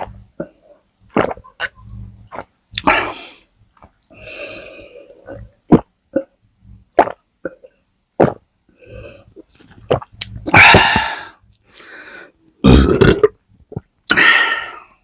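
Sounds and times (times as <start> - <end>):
person burping loudly: 0.4 - 3.4, 9.9 - 11.3, 12.6 - 13.4.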